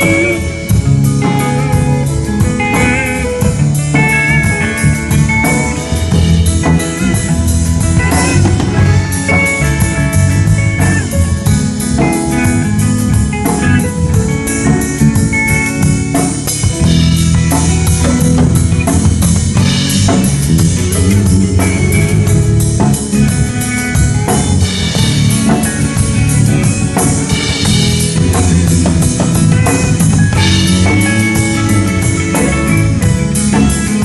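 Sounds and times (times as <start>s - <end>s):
drum kit beat: 0.0s - 34.0s
guitar: 0.0s - 34.0s
low bass line: 0.0s - 34.0s.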